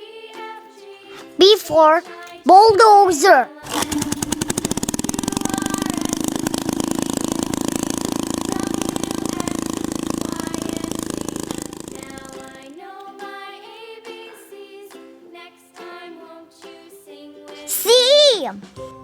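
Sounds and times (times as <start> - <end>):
bulldozer engine running: 3.6 - 12.7.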